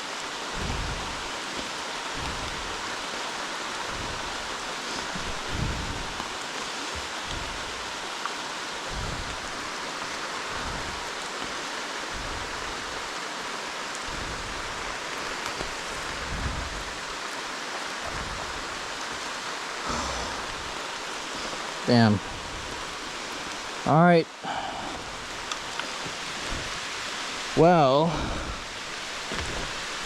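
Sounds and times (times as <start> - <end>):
steady rain pouring: 0.0 - 30.0
low rumbles on microphone: 0.5 - 6.4, 7.0 - 8.0, 8.8 - 11.3, 12.0 - 13.1, 13.9 - 17.3, 18.0 - 23.8.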